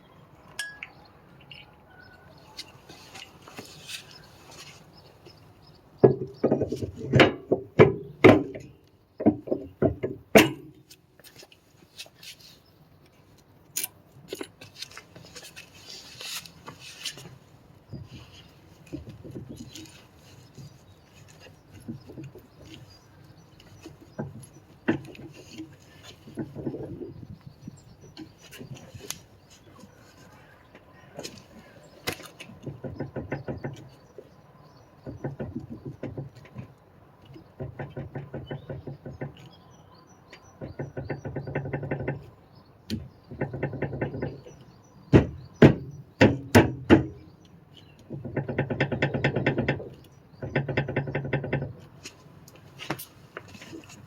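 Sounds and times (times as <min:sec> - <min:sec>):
sharp loud knocks: 0:06.0 - 0:10.8, 0:45.1 - 0:47.2
towbar clunking and rattling: 0:06.0 - 0:11.6, 0:14.3 - 0:30.0, 0:30.7 - 0:34.4, 0:35.0 - 0:39.5, 0:40.4 - 0:54.0.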